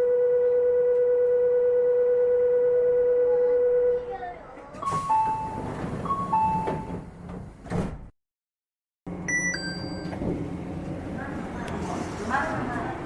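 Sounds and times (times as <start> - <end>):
sliding doors closing with thump: 4.7 - 8.1, 10.1 - 10.5
two-note electronic door chime: 4.8 - 7.0, 9.2 - 10.2
short high electronic tones: 9.3 - 10.2.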